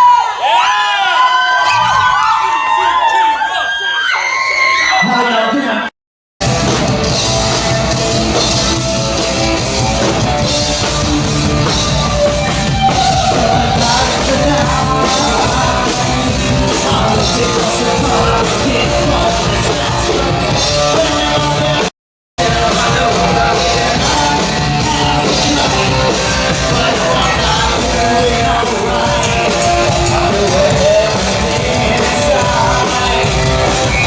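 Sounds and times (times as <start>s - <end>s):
bass guitar: 6.4s - 34.0s
drums: 6.4s - 34.0s
electric guitar: 6.4s - 34.0s
person singing: 11.6s - 34.0s.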